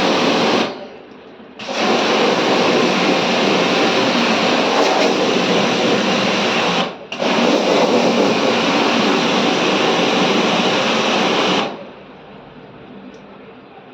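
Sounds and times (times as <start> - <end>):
water jet spraying: 0.0 - 0.8, 1.6 - 11.8.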